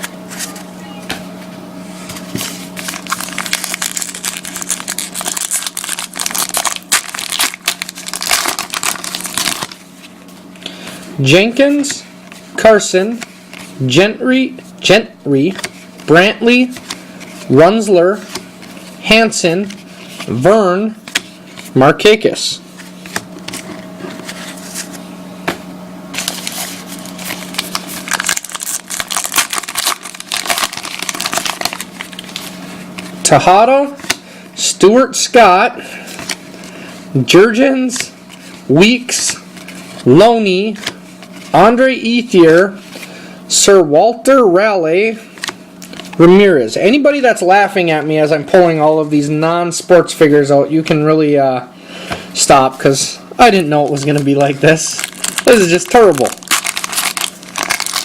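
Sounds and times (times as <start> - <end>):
cards being handled: 0.0 - 13.8, 15.4 - 19.0, 21.0 - 21.8, 22.7 - 34.2, 45.3 - 46.2, 53.8 - 58.0
wrapper tearing and crinkling: 2.4 - 9.8, 26.1 - 33.2, 54.5 - 58.0.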